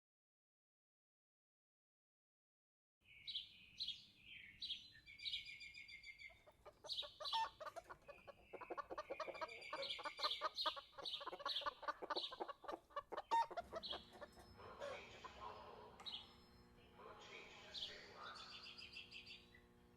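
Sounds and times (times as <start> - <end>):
birds chirping: 3.0 - 19.8
birds clucking calls: 4.4 - 19.7.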